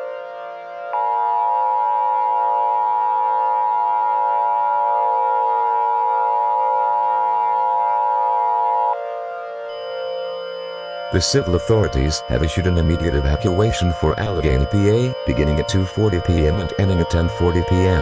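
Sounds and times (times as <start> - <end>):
two-tone alert signal: 9.7 - 18.0.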